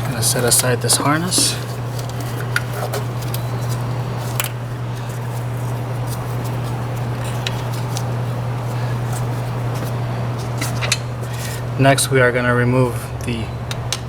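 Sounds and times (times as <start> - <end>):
low background hum: 0.0 - 14.0.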